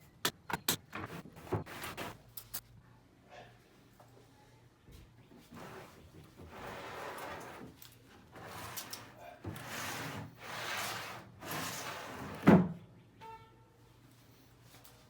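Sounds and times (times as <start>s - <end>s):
sliding doors swishing in track: 8.4s - 12.6s.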